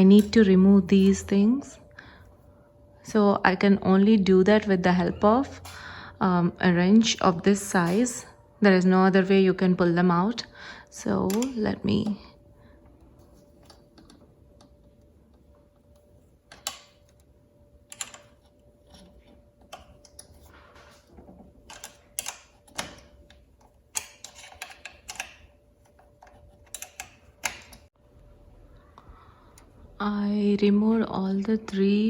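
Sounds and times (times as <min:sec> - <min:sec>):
wrench clicking and tapping: 0:21.7 - 0:23.0, 0:23.9 - 0:25.4, 0:26.2 - 0:27.9.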